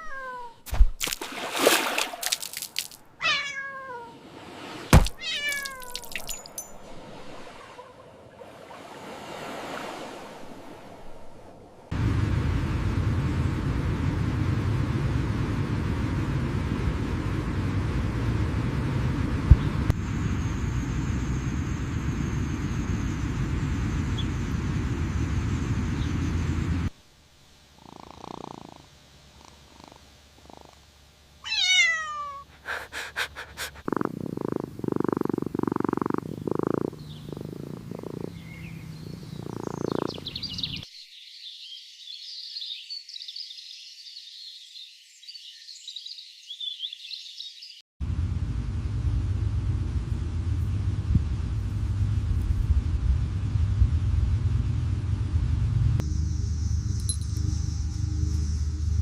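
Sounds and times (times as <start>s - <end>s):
cat purring or meowing: 0.0s - 0.6s, 3.2s - 4.2s, 5.2s - 6.2s, 27.8s - 30.8s, 31.4s - 32.5s, 33.8s - 40.4s
steady low rumble: 10.2s - 27.0s, 48.0s - 59.0s.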